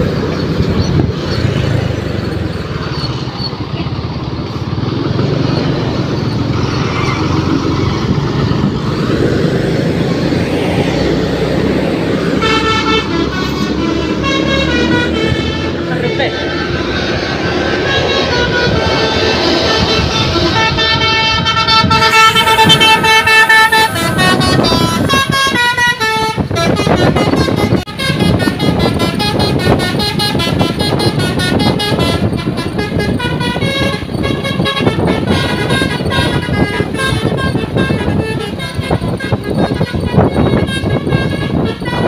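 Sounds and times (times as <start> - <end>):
multi-tone bus air horn melody: 11.7 - 42.0.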